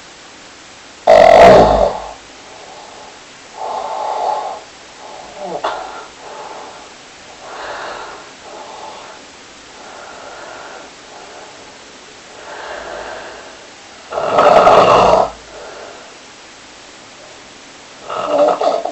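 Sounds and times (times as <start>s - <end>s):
person snoring: 1.1s - 9.2s, 12.4s - 16.1s, 18.0s - 18.9s.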